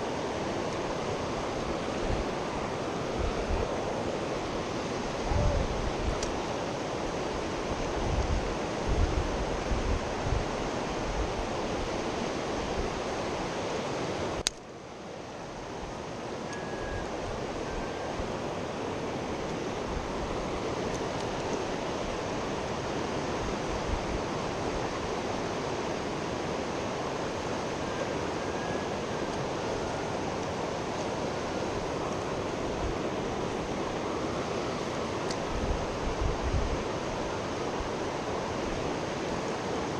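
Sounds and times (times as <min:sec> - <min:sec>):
wind buffeting microphone: 0:00.0 - 0:13.4, 0:29.9 - 0:38.8
river water rushing: 0:00.0 - 0:39.9.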